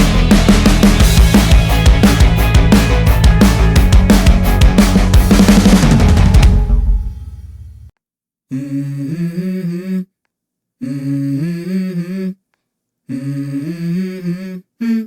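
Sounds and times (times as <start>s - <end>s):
person humming a melody: 8.5s - 10.1s.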